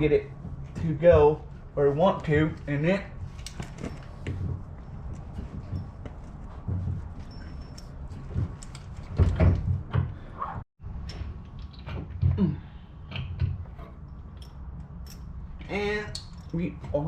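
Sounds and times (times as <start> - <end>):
metal clunks and knocks: 3.6 - 10.2.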